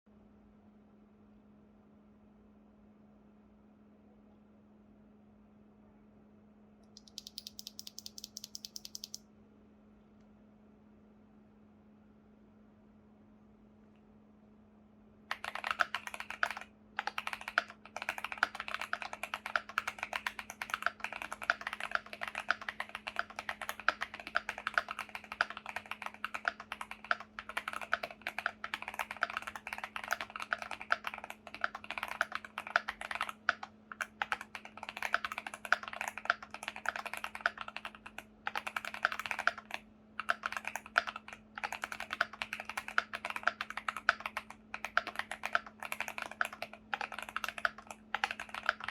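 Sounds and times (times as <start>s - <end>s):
fast mechanical keyboard typing: 6.9s - 9.2s, 15.3s - 48.9s.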